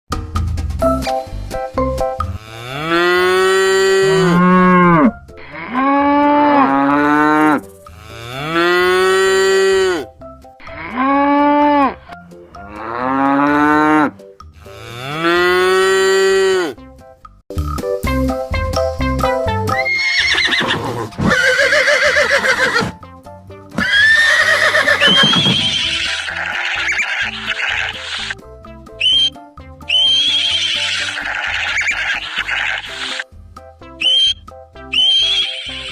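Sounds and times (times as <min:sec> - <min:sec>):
background music: 0:00.1 - 0:35.9
cow mooing: 0:02.4 - 0:12.0, 0:12.6 - 0:16.8
horse whinnying: 0:19.8 - 0:23.0, 0:23.8 - 0:28.4, 0:29.9 - 0:33.2, 0:35.0 - 0:35.9.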